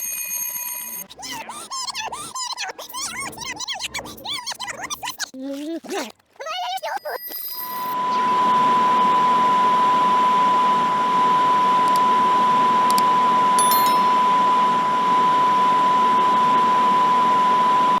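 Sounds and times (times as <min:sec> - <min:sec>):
high-pitched electronic beep tone: 0:00.0 - 0:01.1, 0:07.0 - 0:08.4, 0:13.6 - 0:14.3.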